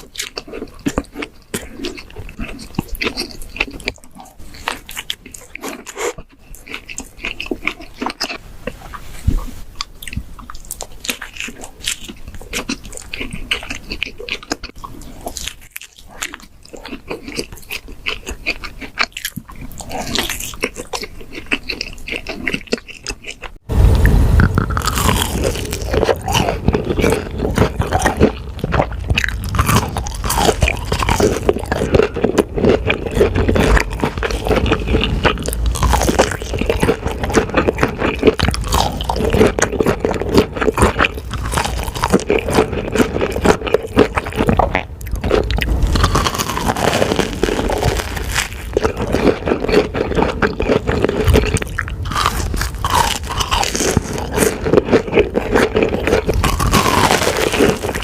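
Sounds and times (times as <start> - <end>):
crunchy bites and chewing: 0.0 - 58.0.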